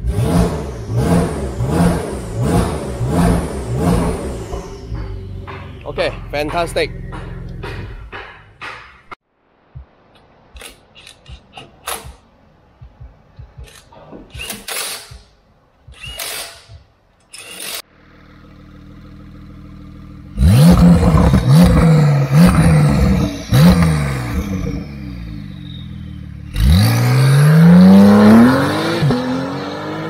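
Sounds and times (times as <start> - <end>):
car engine revving: 0.0 - 8.2, 17.9 - 30.0.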